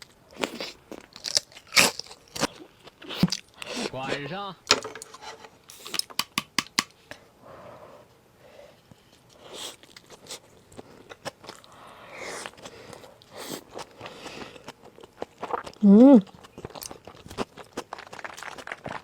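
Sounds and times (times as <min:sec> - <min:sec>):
person chewing with wet mouth sounds: 0:09.1 - 0:19.0.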